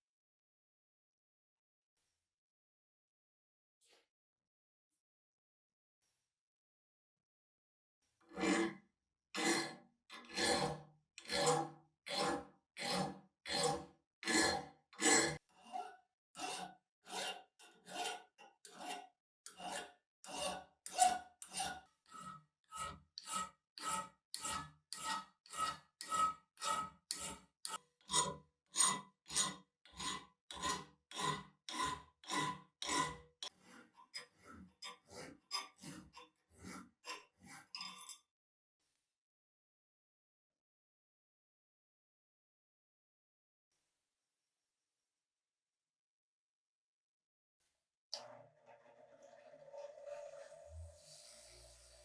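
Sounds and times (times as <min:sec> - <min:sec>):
hand file rasping on steel: 0:08.3 - 0:08.8, 0:09.4 - 0:38.2.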